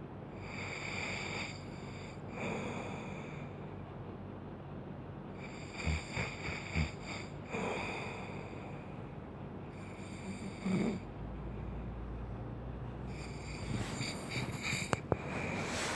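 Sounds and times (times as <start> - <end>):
snorting breaths: 0.4 - 3.6, 5.4 - 9.2, 9.8 - 12.0, 13.0 - 15.9
person snoring: 5.4 - 8.8, 9.8 - 11.1, 13.1 - 15.9.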